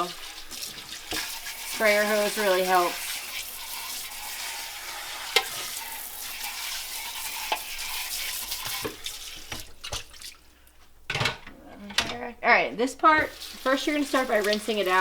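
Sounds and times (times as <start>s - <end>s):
sink sprayer hissing: 0.0s - 9.8s, 13.0s - 15.0s.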